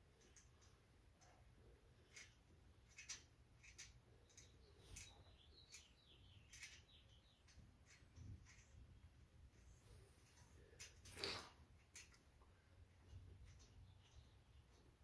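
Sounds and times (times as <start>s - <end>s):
faint bird chirps: 3.0s - 8.7s.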